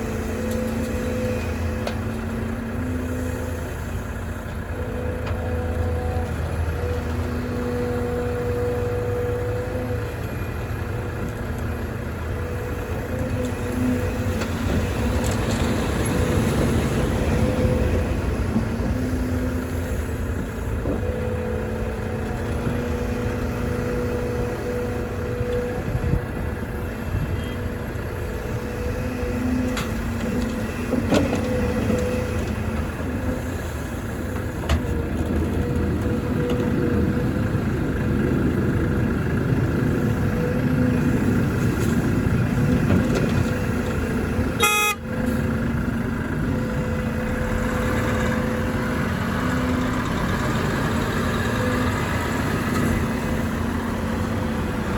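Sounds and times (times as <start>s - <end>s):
excavator diesel engine running: 0.0s - 54.9s
short horn toot: 44.6s - 45.0s.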